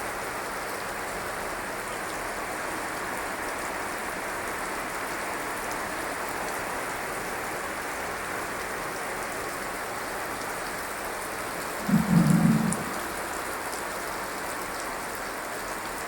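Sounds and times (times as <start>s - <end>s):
heavy rain falling: 11.7s - 13.6s
low rumble: 11.8s - 13.1s.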